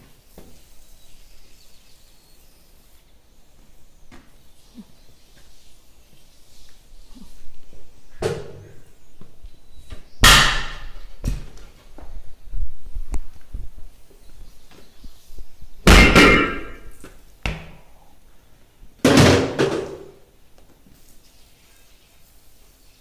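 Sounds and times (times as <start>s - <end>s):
loud metal bangs with ringing: 10.2s - 11.0s, 15.9s - 16.9s.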